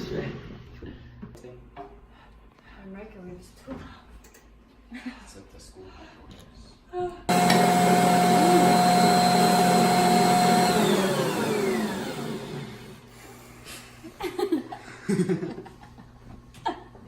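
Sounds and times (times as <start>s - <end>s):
electric mixer motor whining: 7.3s - 13.5s.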